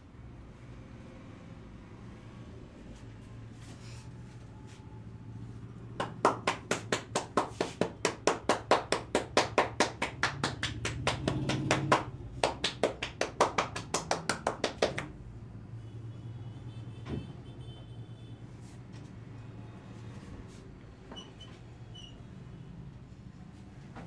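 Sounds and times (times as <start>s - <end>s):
hands striking head rhythmically: 6.0s - 15.2s.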